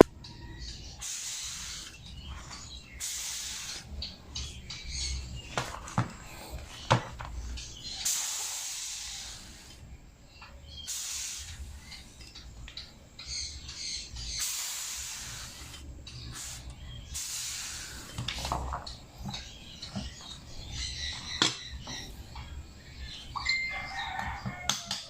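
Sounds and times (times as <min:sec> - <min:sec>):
compressed air hissing: 0:00.8 - 0:10.0, 0:10.7 - 0:12.2, 0:13.3 - 0:21.1.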